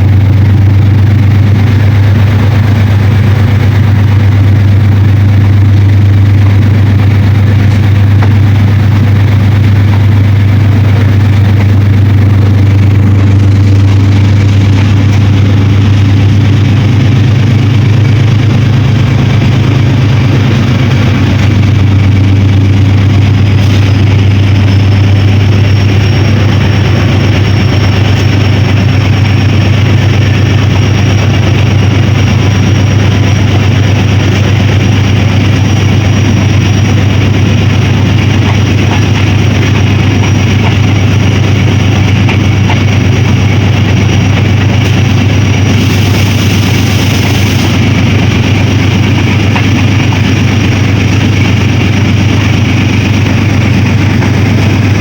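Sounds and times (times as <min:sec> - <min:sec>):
diesel locomotive engine drone: 0:00.0 - 0:55.0
thin high whine: 0:00.1 - 0:55.0.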